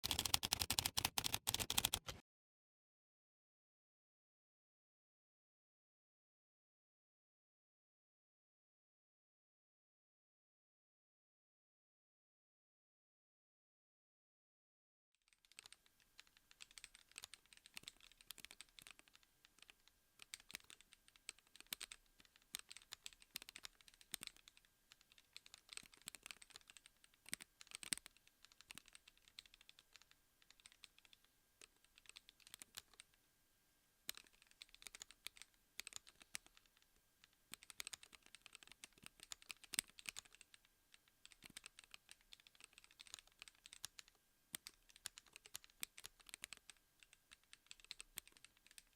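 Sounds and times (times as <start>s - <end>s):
keyboard typing: 0.0s - 2.2s, 15.3s - 33.1s, 34.1s - 36.8s, 37.5s - 48.9s.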